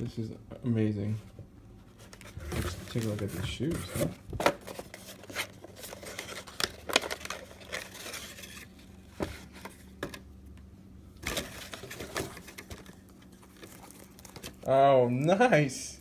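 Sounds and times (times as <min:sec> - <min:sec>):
packaging crinkling and rustling: 0:02.0 - 0:10.2, 0:11.2 - 0:14.7.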